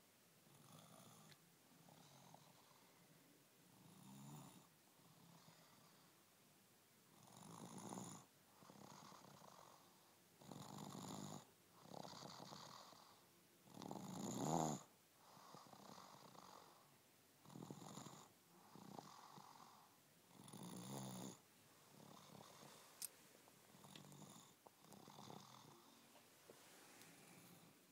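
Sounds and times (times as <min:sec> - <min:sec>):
toddler snoring: 0:07.2 - 0:16.8, 0:17.4 - 0:22.9, 0:23.7 - 0:27.9
soft breathing out: 0:25.6 - 0:27.9.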